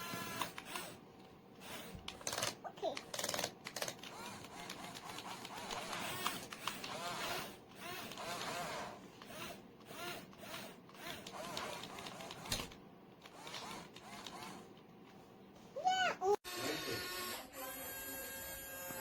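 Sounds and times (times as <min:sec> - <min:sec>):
small electric motors whirring: 0:00.0 - 0:01.0, 0:01.6 - 0:14.7, 0:16.5 - 0:19.0.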